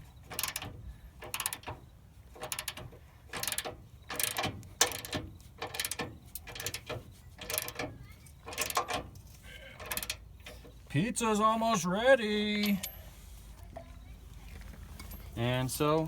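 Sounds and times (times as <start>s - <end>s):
ratchet wrench clicking: 0.3s - 1.7s, 2.4s - 7.9s, 8.5s - 9.0s, 9.8s - 10.2s.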